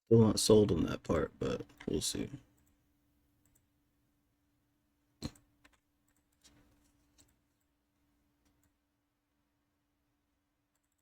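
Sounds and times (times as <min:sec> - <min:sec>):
faint steady hum: 0:00.1 - 0:11.0
keyboard and mouse clicks: 0:05.2 - 0:06.6, 0:10.7 - 0:11.0.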